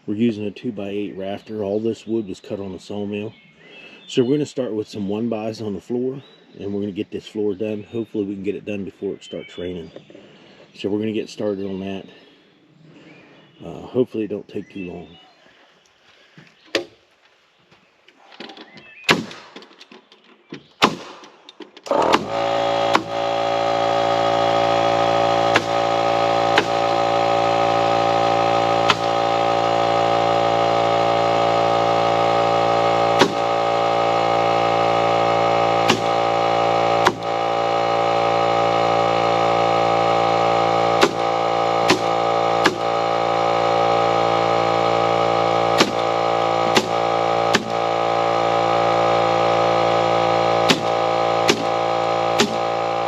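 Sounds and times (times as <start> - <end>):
engine or compressor humming: 0.0 - 4.2, 20.8 - 53.0
nail gun firing: 19.1 - 20.0, 20.7 - 30.6, 32.3 - 37.8, 40.4 - 43.5, 45.4 - 48.2, 50.4 - 53.0.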